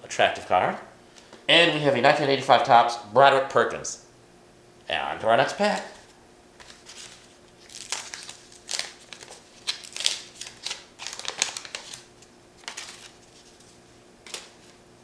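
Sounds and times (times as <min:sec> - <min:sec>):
paper wrapper crinkling: 0:05.6 - 0:14.8.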